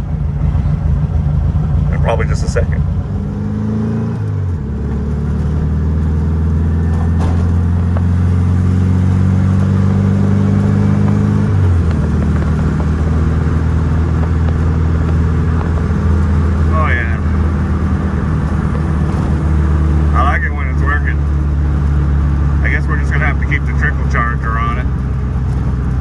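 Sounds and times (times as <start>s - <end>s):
car engine running while driving: 0.0s - 26.0s.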